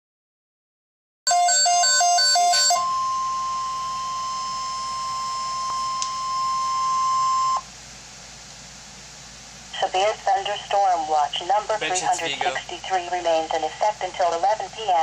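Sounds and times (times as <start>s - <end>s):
steady high alarm tone: 1.3s - 7.7s
beeps alternating two pitches: 2.3s - 7.6s.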